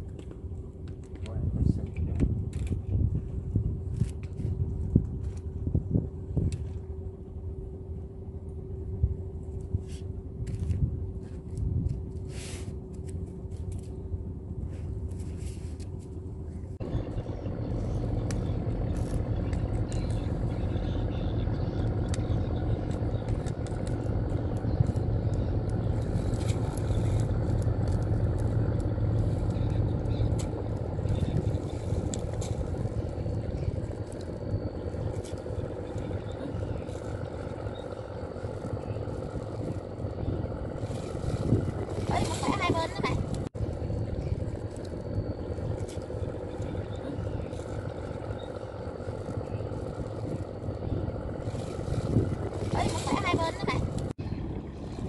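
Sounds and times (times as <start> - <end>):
motor running: 16.8 - 55.0.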